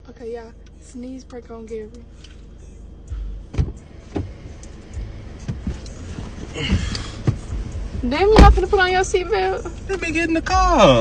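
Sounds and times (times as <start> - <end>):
low rumble: 0.0 - 11.0
knocks and clunks inside a car: 3.3 - 9.5.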